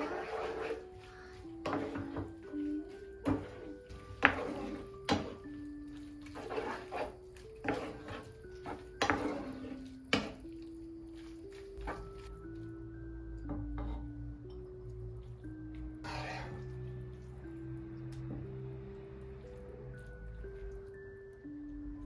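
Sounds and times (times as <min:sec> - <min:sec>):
soft background music: 0:00.0 - 0:22.0
dishes and cutlery clinking: 0:01.6 - 0:05.6, 0:06.2 - 0:10.6.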